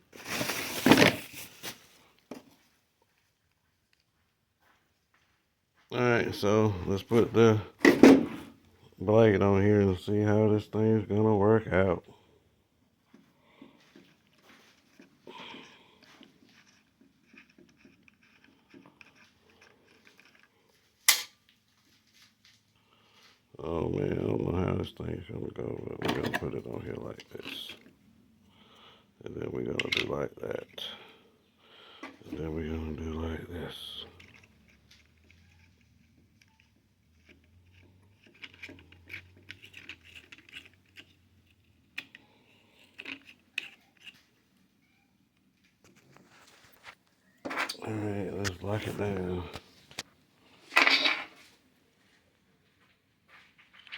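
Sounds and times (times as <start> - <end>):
angle grinder parts clicking: 34.1 - 44.4.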